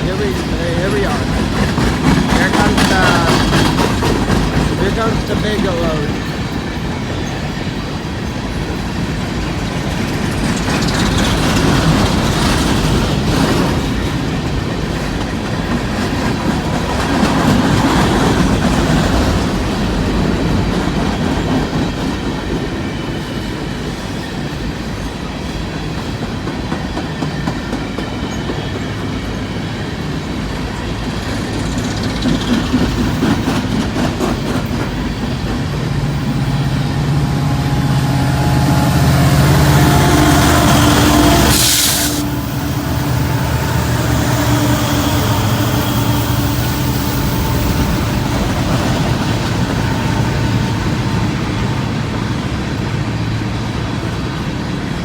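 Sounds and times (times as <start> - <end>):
train wheels rumbling over rail joints: 0.0 - 55.0.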